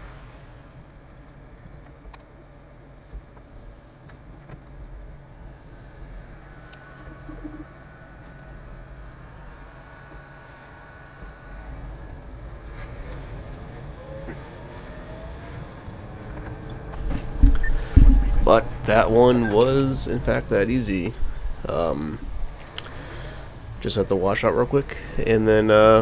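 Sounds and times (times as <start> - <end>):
diesel truck engine rumbling: 17.0 - 26.0.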